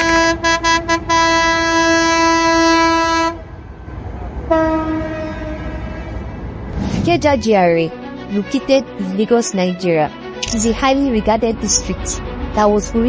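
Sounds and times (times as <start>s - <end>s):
train horn blasts: 0.0s - 3.5s, 4.5s - 6.4s.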